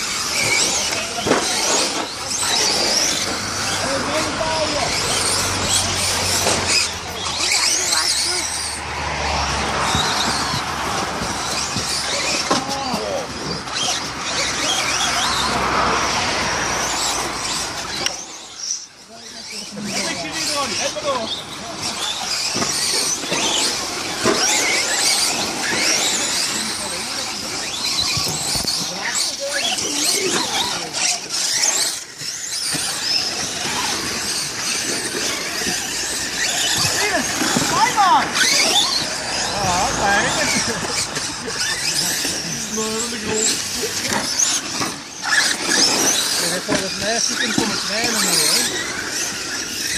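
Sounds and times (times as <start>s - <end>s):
toy car motor whine: 0.0s - 49.9s
steady rushing noise: 20.6s - 49.9s.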